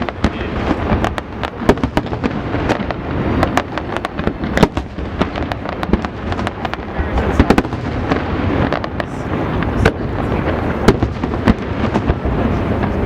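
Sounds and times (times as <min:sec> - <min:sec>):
fireworks bangs and cracks: 0:00.0 - 0:13.0.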